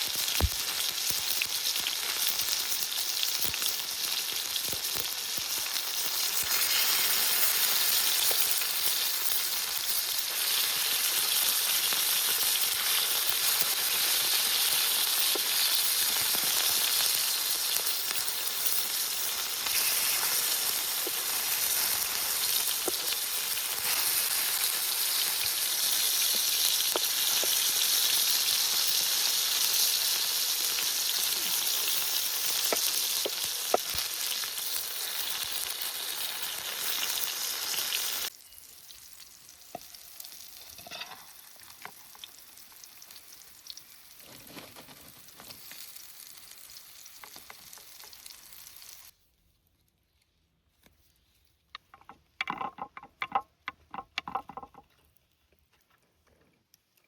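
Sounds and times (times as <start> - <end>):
food sizzling in frying: 0.0 - 49.2, 52.0 - 54.8.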